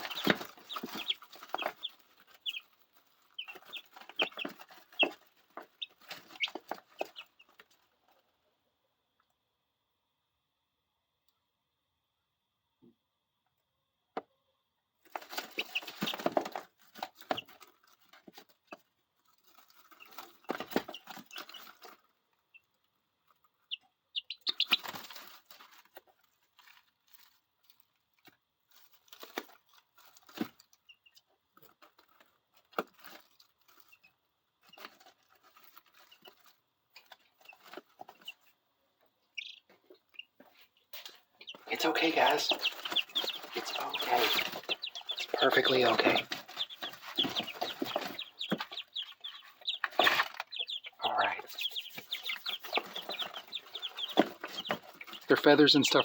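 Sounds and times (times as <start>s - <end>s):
chicks scratching and scrambling: 0.0s - 9.2s, 15.0s - 56.0s
chicks peeping: 0.0s - 9.5s, 13.9s - 56.0s.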